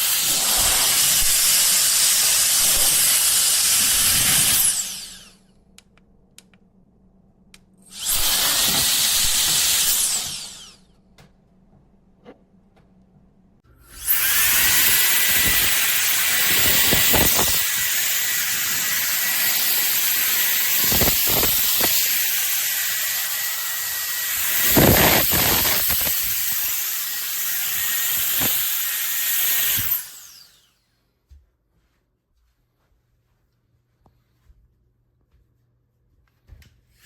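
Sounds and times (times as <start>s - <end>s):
electric air duster running: 0.0s - 5.5s, 7.9s - 10.9s, 13.8s - 30.7s.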